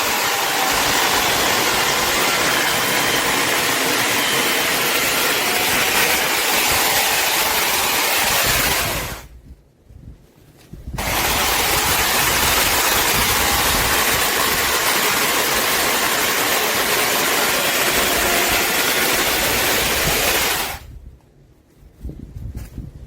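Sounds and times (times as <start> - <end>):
chainsaw running: 0.0 - 9.3, 11.0 - 20.8.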